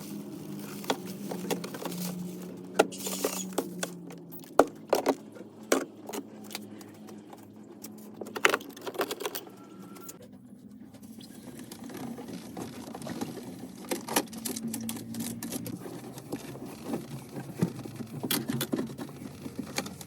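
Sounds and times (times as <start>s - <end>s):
small hard objects clattering: 0.0s - 5.3s.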